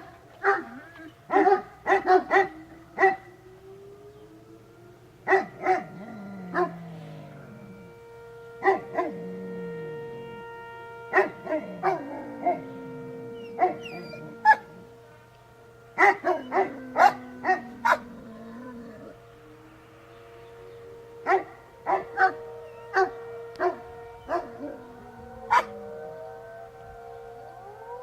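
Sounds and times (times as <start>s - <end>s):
faint steady tone: 0.0s - 28.0s
dog barking: 0.4s - 3.3s, 5.3s - 5.9s, 6.5s - 6.8s, 8.6s - 9.1s, 11.1s - 12.6s, 13.5s - 14.6s, 16.0s - 18.1s, 21.3s - 24.5s, 25.5s - 25.7s.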